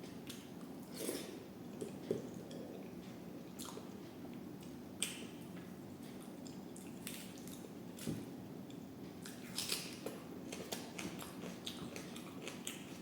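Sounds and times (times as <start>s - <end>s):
steady low hum: 0.0s - 13.0s
person chewing food: 0.2s - 4.0s, 8.7s - 13.0s.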